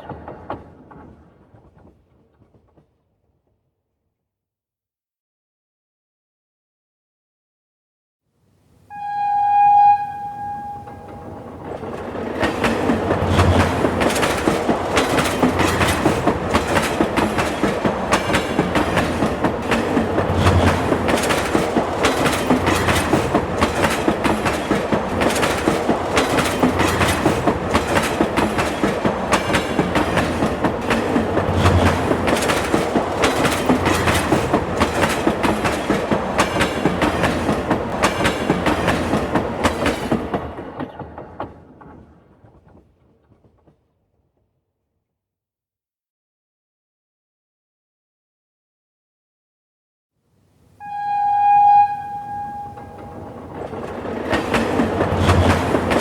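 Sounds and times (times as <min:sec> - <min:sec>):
train wheels clickety-clack: 0:00.0 - 0:03.3, 0:10.9 - 0:44.1, 0:52.3 - 0:56.0
train horn: 0:08.9 - 0:11.6, 0:50.8 - 0:53.6.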